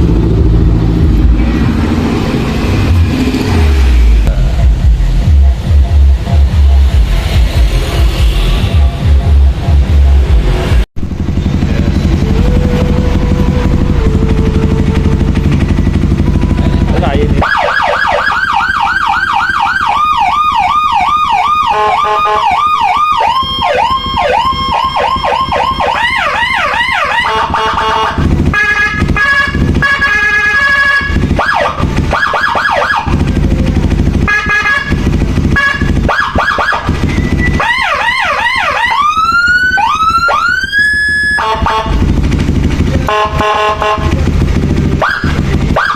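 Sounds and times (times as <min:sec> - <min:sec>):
motorcycle engine running: 0:00.0 - 0:45.9
electronic siren cycling tones: 0:11.3 - 0:28.4, 0:29.2 - 0:33.8, 0:35.6 - 0:42.0, 0:44.9 - 0:45.9.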